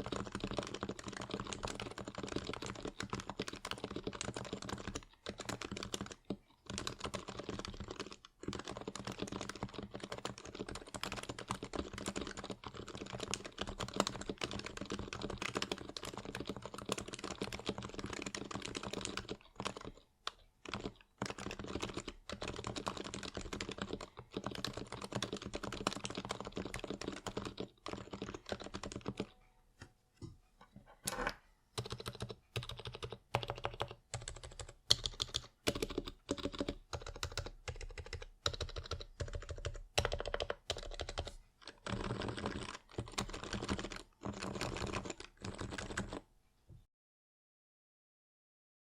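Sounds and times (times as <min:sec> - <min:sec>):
muted keyboard typing: 0:00.0 - 0:29.4, 0:31.0 - 0:46.3.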